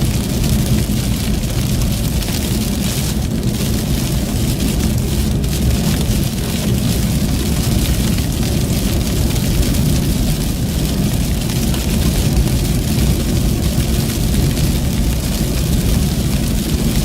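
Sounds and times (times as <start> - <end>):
vehicle rumbling on highway: 0.0 - 17.0.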